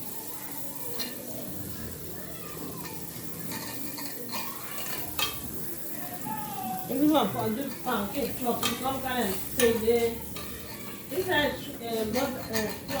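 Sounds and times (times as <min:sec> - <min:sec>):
steady low hiss from pan: 0:00.0 - 0:13.0
spoon stirring in a pot: 0:00.1 - 0:13.0
spoon clinking against pot: 0:02.8 - 0:05.7, 0:07.5 - 0:13.0.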